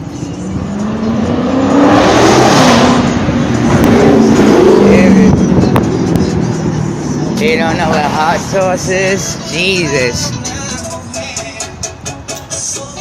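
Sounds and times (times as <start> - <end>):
engine revving past: 0.4 - 8.5.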